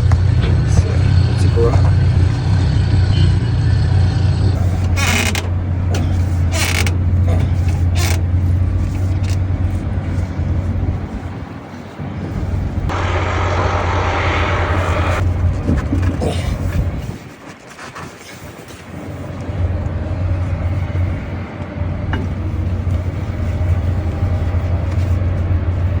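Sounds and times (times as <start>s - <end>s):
heavy engine droning: 0.0s - 17.3s, 19.0s - 26.0s
broad rushing noise: 0.0s - 26.0s.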